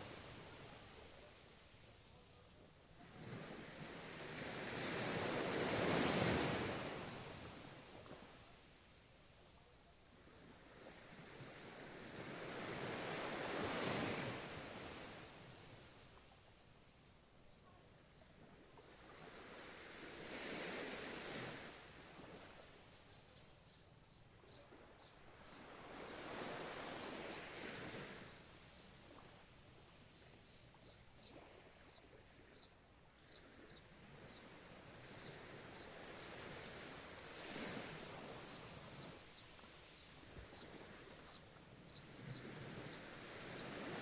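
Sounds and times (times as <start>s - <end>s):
ocean waves washing in: 0.0s - 1.4s, 3.0s - 8.0s, 10.5s - 16.0s, 18.9s - 22.5s, 33.4s - 44.0s.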